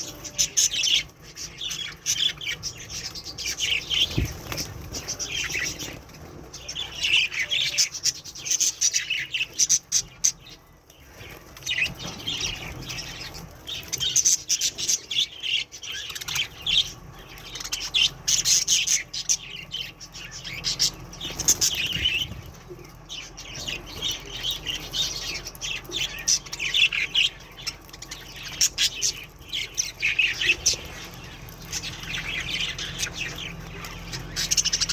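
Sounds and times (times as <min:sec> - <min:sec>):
budgerigars chirping and squawking: 0:00.0 - 0:34.9
wings flapping: 0:03.0 - 0:06.8.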